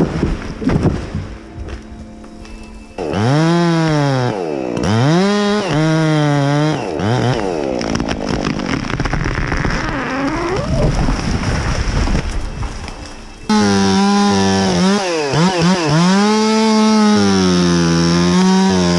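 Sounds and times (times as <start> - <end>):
chainsaw revving: 3.0 - 9.8, 13.5 - 18.9.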